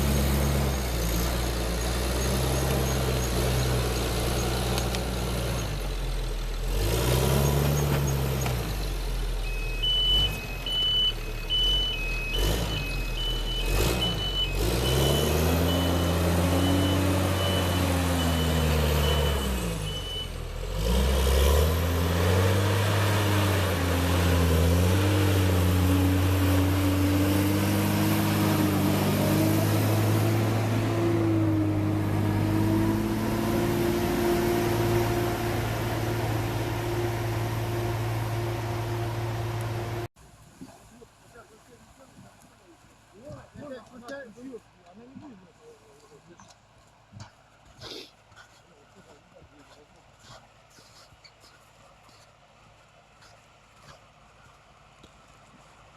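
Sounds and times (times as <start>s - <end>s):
heavy vehicle engine revving: 0.0s - 40.2s
reversing alarm beeping: 9.4s - 20.5s.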